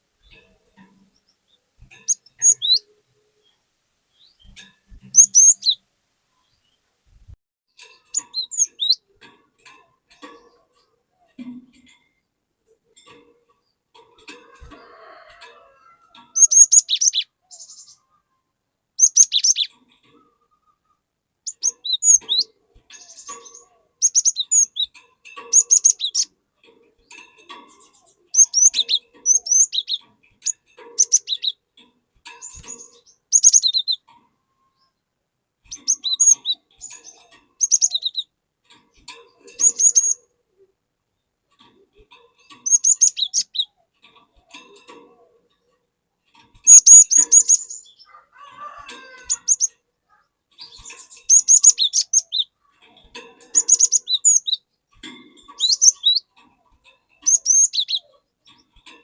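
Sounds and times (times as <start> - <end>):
bird singing whistled notes: 4.2 - 5.8, 46.7 - 48.0.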